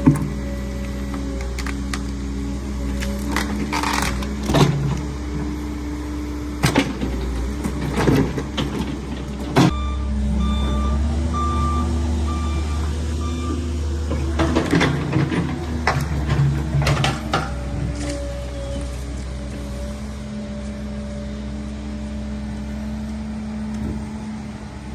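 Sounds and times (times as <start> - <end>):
diesel engine running: 0.0 - 24.9
short beeps: 9.7 - 13.6.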